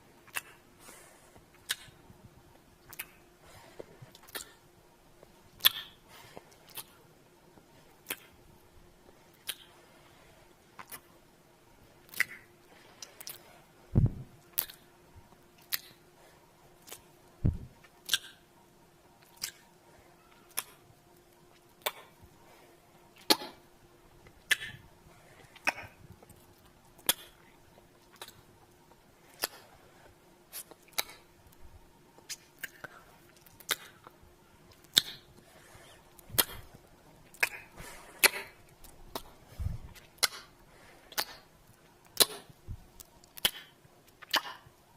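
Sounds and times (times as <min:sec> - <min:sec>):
lip smacking kisses: 0:00.2 - 0:00.6, 0:02.9 - 0:03.2, 0:05.6 - 0:06.0, 0:06.7 - 0:07.0, 0:08.0 - 0:08.3, 0:09.4 - 0:09.7, 0:12.1 - 0:12.5, 0:14.5 - 0:14.8, 0:15.6 - 0:16.0, 0:18.0 - 0:18.4, 0:19.2 - 0:19.6, 0:20.5 - 0:20.8, 0:28.1 - 0:28.4, 0:29.4 - 0:29.6, 0:30.5 - 0:31.2, 0:32.3 - 0:34.1, 0:34.7 - 0:35.3, 0:36.4 - 0:36.7, 0:40.0 - 0:40.5, 0:41.1 - 0:41.4, 0:43.2 - 0:44.7
soft low thump: 0:17.4 - 0:17.7.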